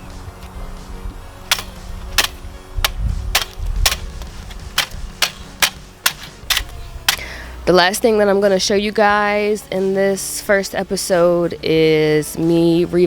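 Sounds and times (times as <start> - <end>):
background music: 0.0 - 13.0
clicking percussive beat: 1.5 - 7.2.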